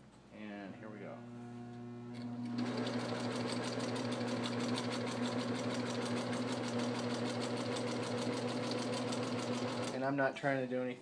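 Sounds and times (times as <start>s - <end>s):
sewing machine motor hum: 1.2s - 10.0s.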